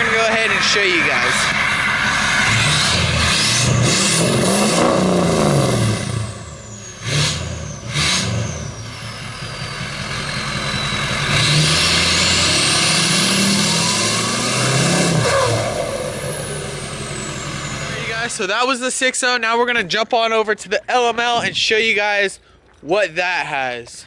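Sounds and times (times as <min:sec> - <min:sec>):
diesel engine revving: 0:00.0 - 0:18.6
turbo whistle: 0:13.4 - 0:18.3.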